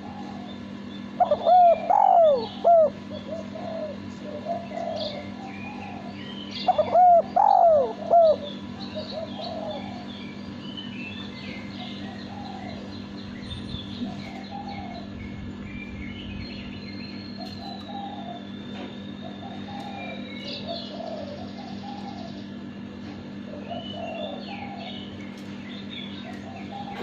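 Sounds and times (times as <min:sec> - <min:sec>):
dove cooing: 0:00.0 - 0:10.2, 0:11.6 - 0:13.1, 0:14.0 - 0:15.2, 0:17.4 - 0:18.6, 0:19.2 - 0:25.2, 0:26.2 - 0:27.0
steady low hum: 0:00.0 - 0:27.0.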